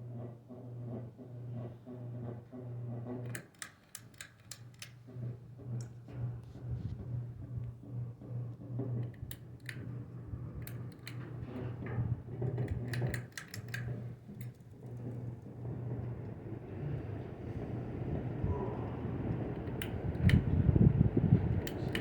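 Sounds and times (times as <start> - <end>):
ceiling fan motor hum: 0.0 - 22.0
clicks and rattles: 3.1 - 6.1, 8.8 - 16.0, 19.6 - 20.6, 21.6 - 22.0.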